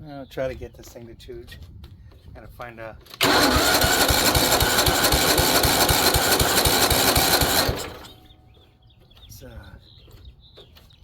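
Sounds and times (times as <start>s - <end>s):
engine cranking by electric starter: 3.0s - 8.3s.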